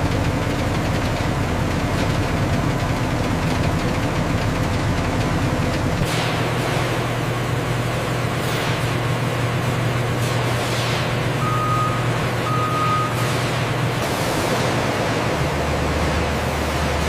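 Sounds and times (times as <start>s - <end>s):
vehicle engine hum: 0.0s - 17.0s
warning beeps: 11.4s - 13.2s.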